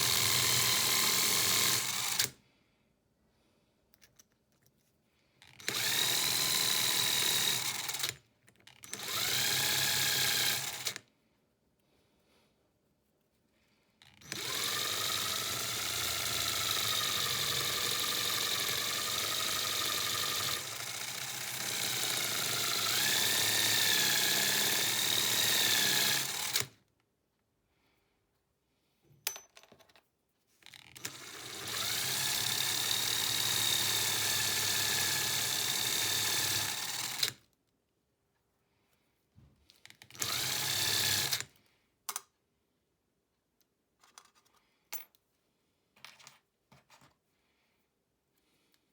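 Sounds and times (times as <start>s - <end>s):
power tool motor whining: 0.0s - 2.3s, 5.6s - 8.1s, 8.9s - 11.0s, 14.2s - 26.7s, 31.0s - 37.3s, 40.2s - 41.4s.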